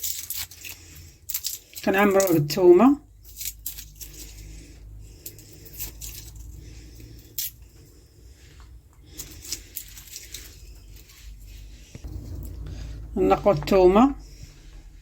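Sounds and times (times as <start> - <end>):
hands handling garlic cloves: 0.0 - 2.4, 3.2 - 6.5.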